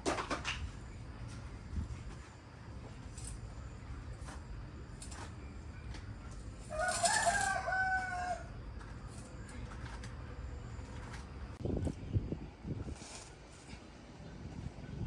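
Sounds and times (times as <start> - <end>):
rooster crowing: 6.7 - 8.6.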